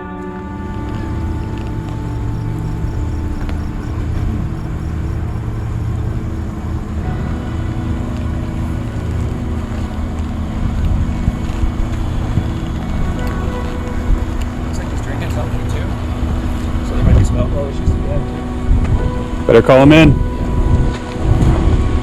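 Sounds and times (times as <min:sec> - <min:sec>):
engine droning: 0:00.8 - 0:17.0.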